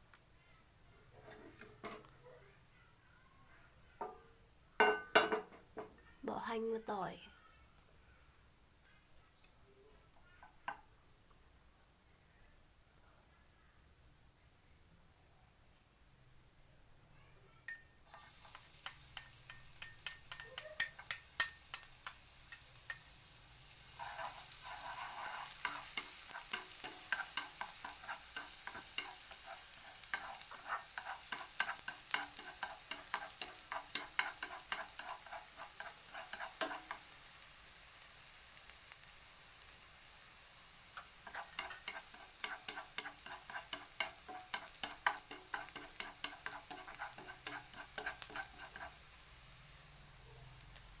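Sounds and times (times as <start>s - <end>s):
onion and garlic sizzling in oil: 17.7s - 51.0s.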